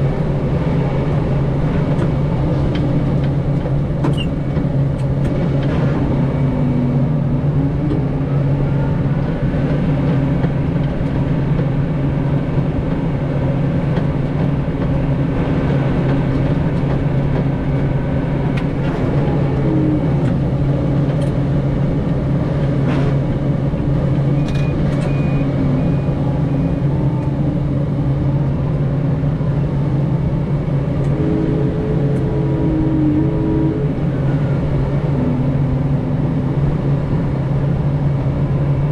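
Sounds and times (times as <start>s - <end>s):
tractor engine droning: 0.0s - 38.9s.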